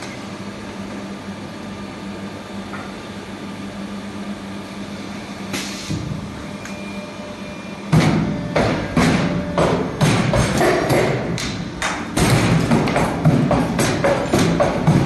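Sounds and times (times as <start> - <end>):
machine humming: 0.0 - 15.0
repeated mechanical thumps: 7.9 - 15.0.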